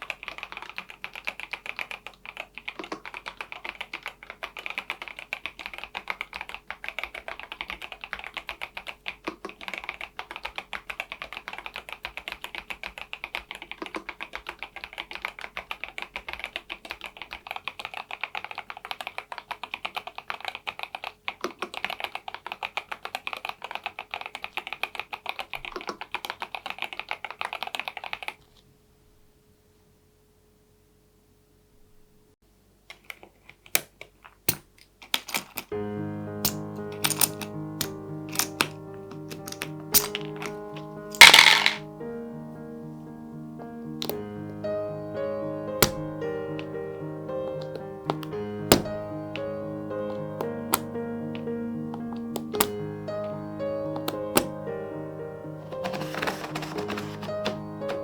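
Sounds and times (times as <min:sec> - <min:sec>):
mechanical keyboard key clacks: 0:36.4 - 0:41.8, 0:47.6 - 0:48.9, 0:50.1 - 0:50.9, 0:51.9 - 0:52.8, 0:54.0 - 0:54.6, 0:55.7 - 0:58.0.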